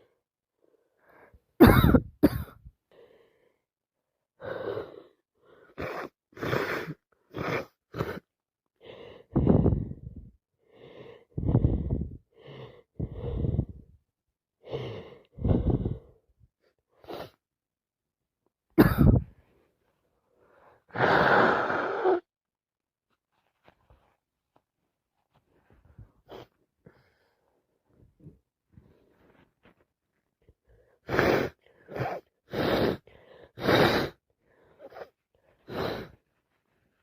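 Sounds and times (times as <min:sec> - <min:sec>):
person blowing nose: 0:05.8 - 0:08.2, 0:20.9 - 0:22.2, 0:31.0 - 0:34.2, 0:34.8 - 0:36.2
person sneezing: 0:18.8 - 0:19.3, 0:31.1 - 0:33.0, 0:33.6 - 0:34.2
person sniffling: 0:20.9 - 0:22.2, 0:30.8 - 0:36.3.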